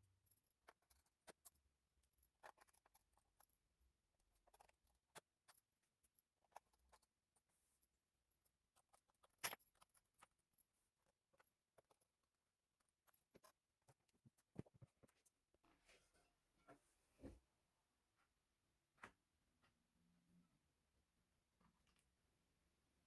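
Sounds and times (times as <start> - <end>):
laptop parts clicking and scraping: 0.2 - 3.6, 4.2 - 15.6.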